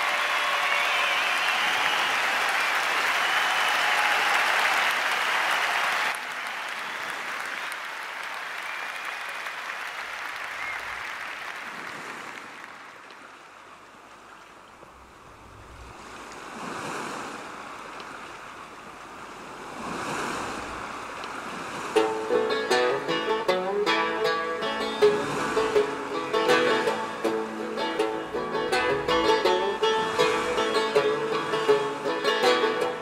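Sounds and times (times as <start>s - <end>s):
audience applause: 0.0s - 13.5s
soft rushing noise: 14.8s - 18.2s
plucked-string music: 21.9s - 33.0s.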